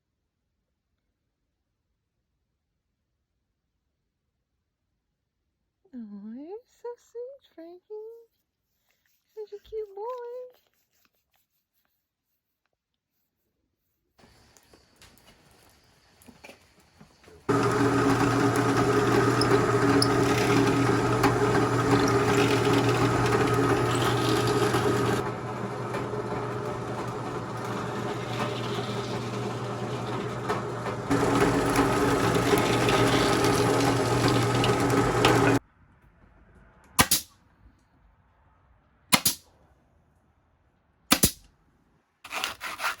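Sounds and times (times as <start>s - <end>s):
small power tool motor running: 17.5s - 35.6s.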